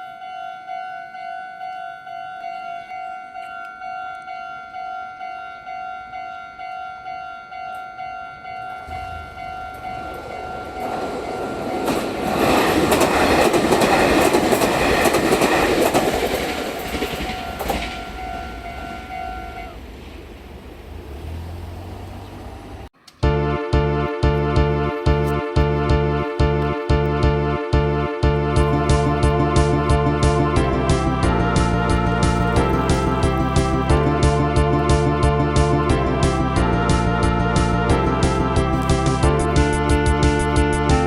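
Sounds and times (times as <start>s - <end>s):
level crossing bell dinging: 0.0s - 11.9s
train wheels clattering: 8.6s - 20.3s
music: 23.0s - 41.0s.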